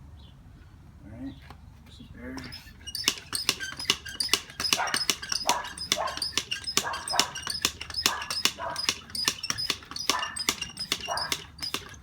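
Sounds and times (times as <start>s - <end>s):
bicycle pump strokes: 2.4s - 12.0s
pump clicks and rattles: 2.4s - 12.0s.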